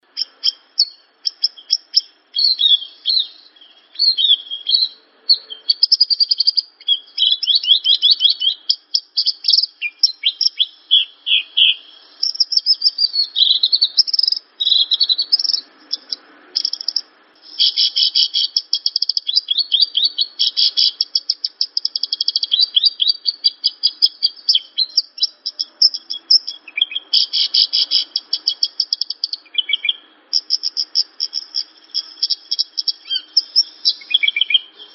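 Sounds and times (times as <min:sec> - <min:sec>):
bushlark singing chirps and trills: 0:00.0 - 0:34.9.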